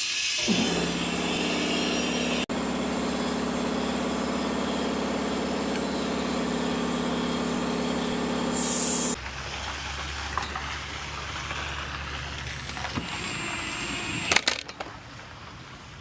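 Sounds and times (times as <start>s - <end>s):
engine running steadily: 0.4s - 9.4s
short burst of hiss: 8.5s - 9.2s.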